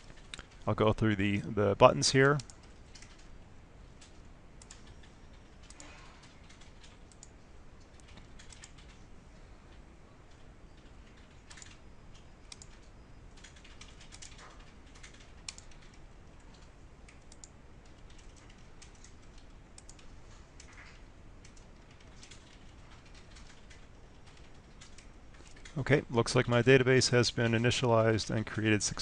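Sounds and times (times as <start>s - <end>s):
computer keyboard clicking: 2.3s - 3.4s, 4.0s - 9.0s, 10.3s - 25.8s.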